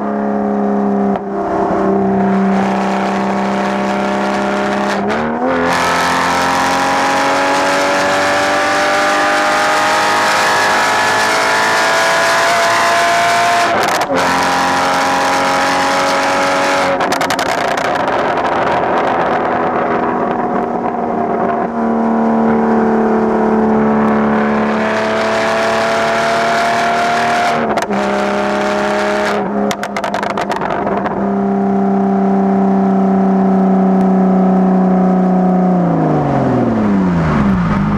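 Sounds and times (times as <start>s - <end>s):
sports car engine through gears: 0.0s - 37.9s.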